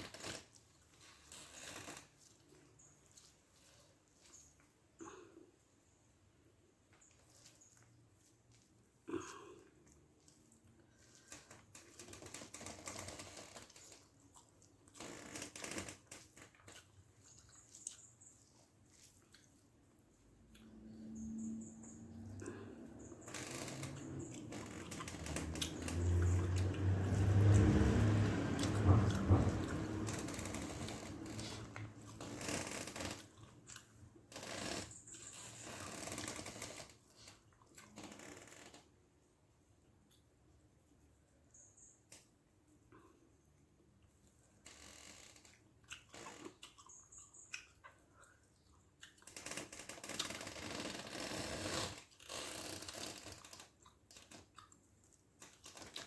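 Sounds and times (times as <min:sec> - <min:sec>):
close-up eating sounds: 0:00.0 - 0:56.0
chewing: 0:06.9 - 0:34.2, 0:45.4 - 0:56.0.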